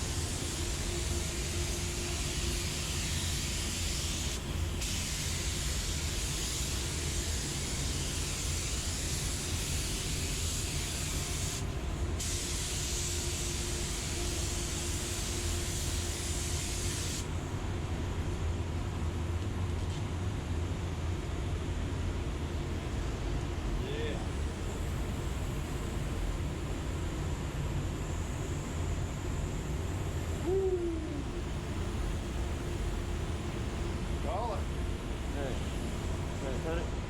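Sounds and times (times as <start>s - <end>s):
spray gun hissing: 0.0s - 17.3s
steady low hum: 0.0s - 37.0s.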